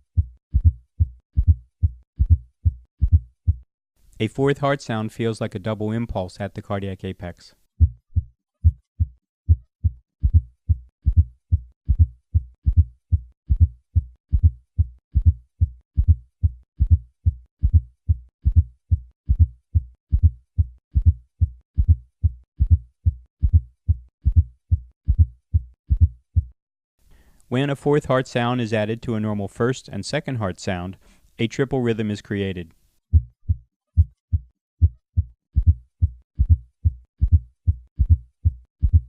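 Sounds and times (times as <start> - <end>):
heartbeat in gallop rhythm: 0.0 - 3.7, 7.8 - 26.6, 33.1 - 39.0.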